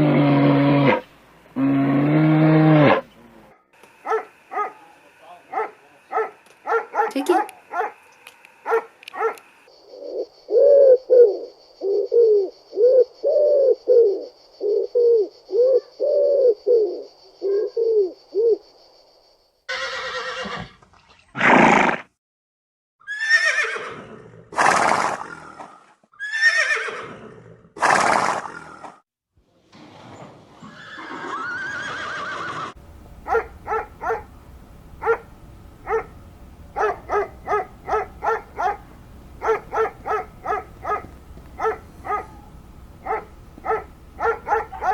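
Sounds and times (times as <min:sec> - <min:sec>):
horse whinnying: 0:19.7 - 0:20.8, 0:23.0 - 0:25.6, 0:26.2 - 0:28.8, 0:30.6 - 0:32.8.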